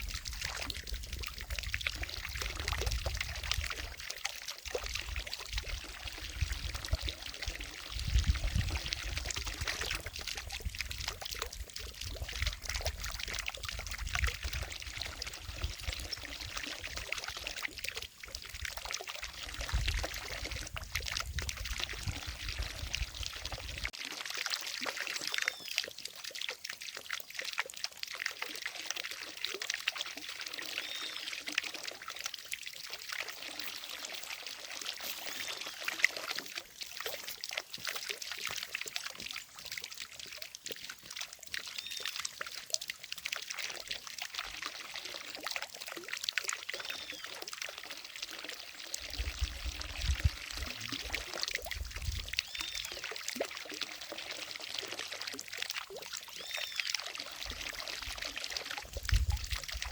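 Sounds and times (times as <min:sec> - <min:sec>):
fountain water splashing: 0:00.0 - 0:59.9.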